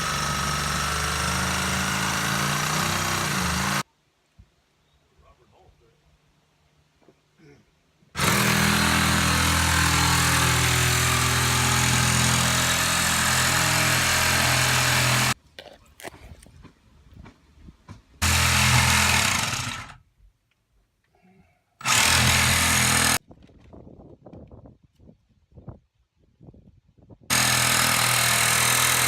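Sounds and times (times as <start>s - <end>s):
electric power tool cutting: 0.0s - 3.8s, 8.2s - 15.4s, 18.2s - 20.0s, 21.8s - 23.2s, 27.3s - 29.0s.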